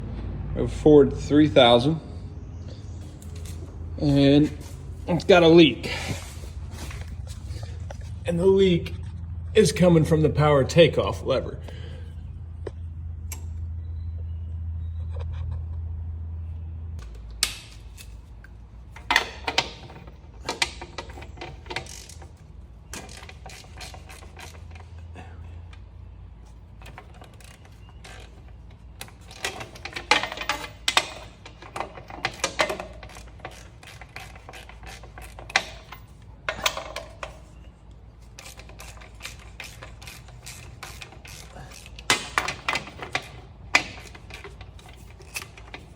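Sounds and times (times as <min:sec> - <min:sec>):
metallic clicks and rattles: 0:26.7 - 0:37.6, 0:38.2 - 0:45.9.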